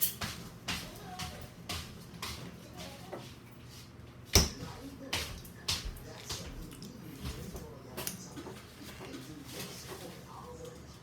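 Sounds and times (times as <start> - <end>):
chewing and mouth clicks: 6.0 - 7.2.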